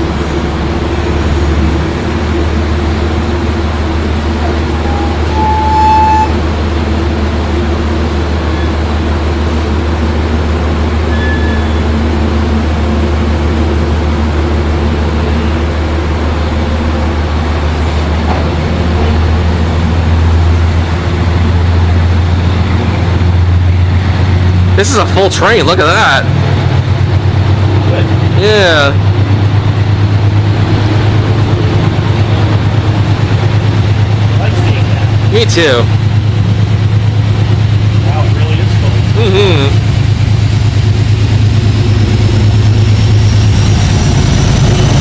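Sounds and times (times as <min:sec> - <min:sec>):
diesel locomotive engine humming: 0:00.0 - 0:45.0
short high beep: 0:04.8 - 0:06.4.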